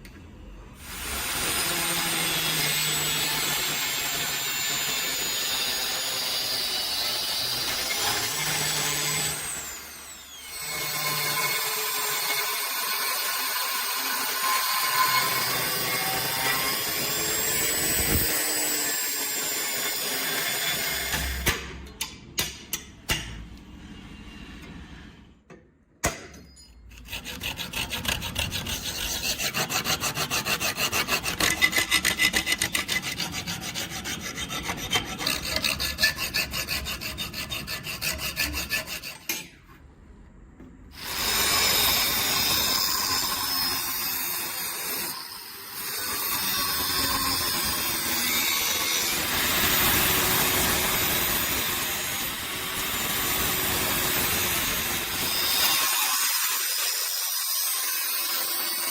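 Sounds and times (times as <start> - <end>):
tool rasping against steel: 26.7 - 39.7.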